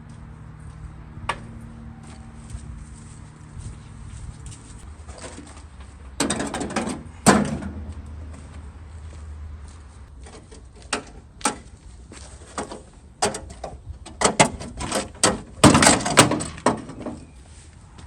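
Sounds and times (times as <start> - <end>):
metal hardware clicking and clanking: 6.2 - 7.8.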